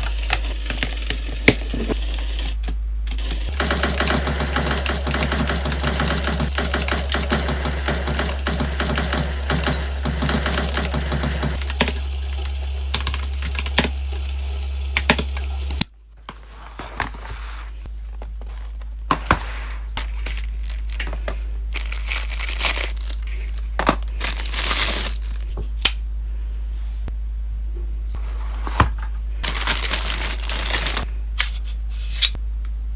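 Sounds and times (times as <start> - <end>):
low hum: 0.0 - 32.9
fast keyboard typing: 3.2 - 15.9
plastic packaging crinkling: 17.1 - 25.8, 29.4 - 31.6.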